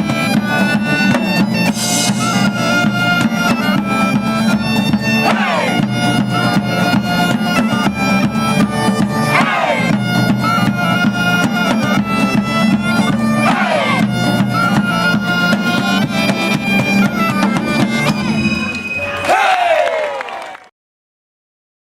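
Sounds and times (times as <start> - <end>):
drum beat: 0.0 - 18.5
bagpipe music with drone: 0.0 - 19.2.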